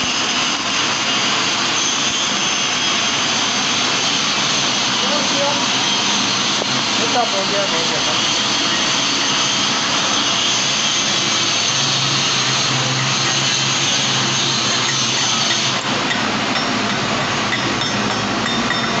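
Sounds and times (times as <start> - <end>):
welding arc crackling: 0.0 - 19.0.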